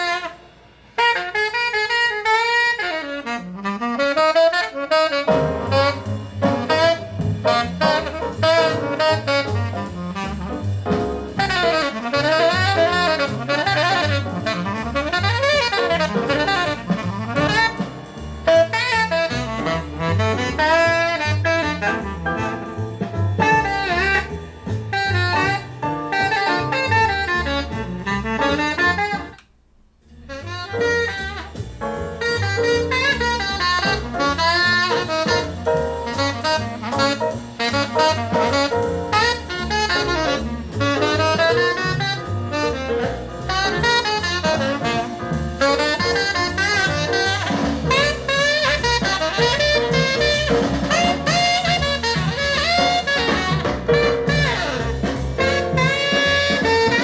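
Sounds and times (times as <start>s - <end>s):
drums: 0.0s - 57.0s
saxophone lead: 0.0s - 57.0s
walking bass: 5.1s - 57.0s.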